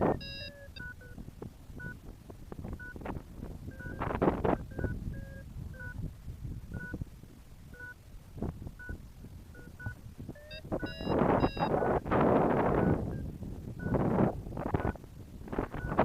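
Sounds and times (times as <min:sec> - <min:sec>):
high electronic beeps: 0:00.0 - 0:01.2, 0:03.7 - 0:06.0, 0:09.6 - 0:12.0, 0:12.6 - 0:14.0
wind buffeting microphone: 0:00.0 - 0:16.0.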